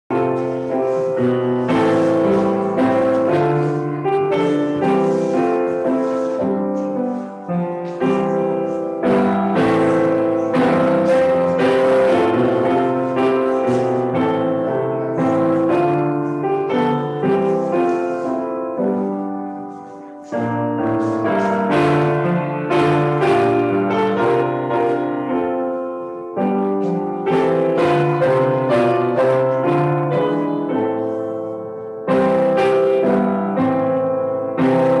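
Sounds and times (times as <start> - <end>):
piano music: 0.1 - 35.0.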